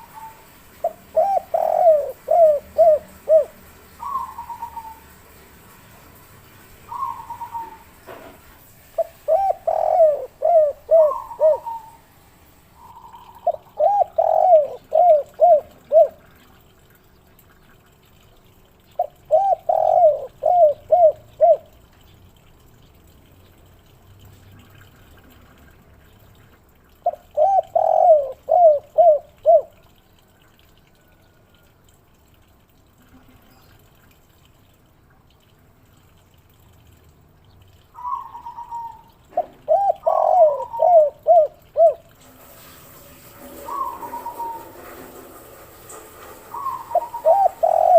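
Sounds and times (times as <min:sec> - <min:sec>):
dove cooing: 0:00.0 - 0:05.1, 0:06.9 - 0:07.9, 0:09.0 - 0:12.0, 0:12.8 - 0:16.4, 0:19.0 - 0:21.8, 0:27.0 - 0:29.8, 0:38.0 - 0:42.1, 0:43.4 - 0:45.3, 0:46.3 - 0:47.9.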